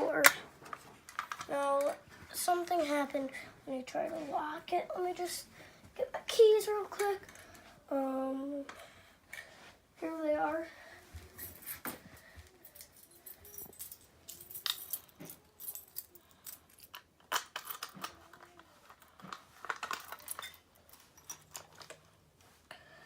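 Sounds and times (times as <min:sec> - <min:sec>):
keys jangling: 0:12.7 - 0:18.1.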